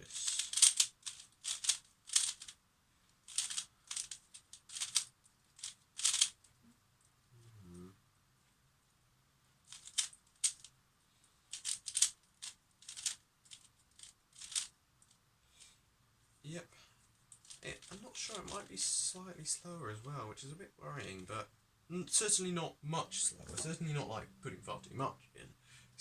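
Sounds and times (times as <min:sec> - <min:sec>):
plastic puzzle pieces clicking: 0:00.1 - 0:02.6, 0:03.3 - 0:06.4, 0:09.7 - 0:10.7, 0:11.5 - 0:14.7.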